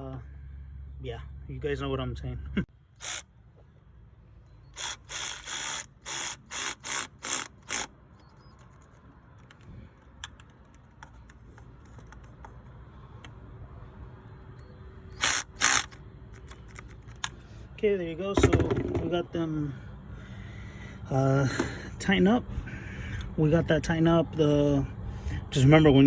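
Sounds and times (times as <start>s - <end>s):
cordless ratchet bursts: 3.0s - 3.3s, 4.7s - 8.7s, 15.1s - 17.3s.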